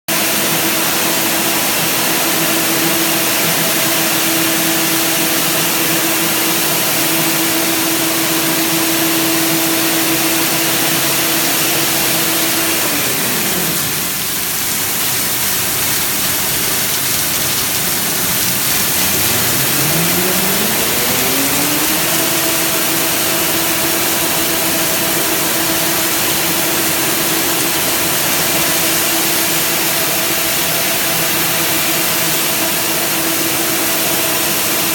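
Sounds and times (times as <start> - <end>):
blower hiss: 0.1 - 34.9
printing machine motor hum: 8.4 - 31.6.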